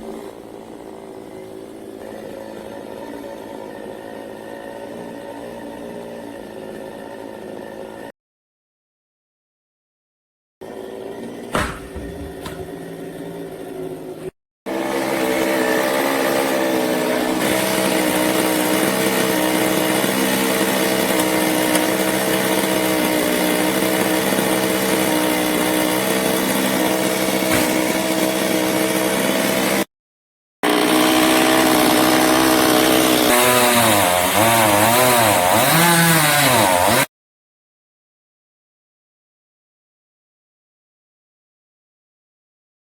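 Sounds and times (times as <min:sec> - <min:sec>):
chainsaw running: 0:00.0 - 0:08.1, 0:10.6 - 0:29.9, 0:30.6 - 0:37.1.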